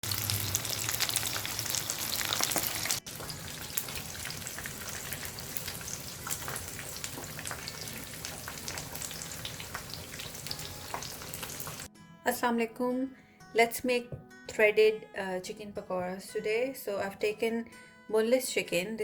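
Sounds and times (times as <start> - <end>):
food deep-frying in hot oil: 0.0 - 11.9.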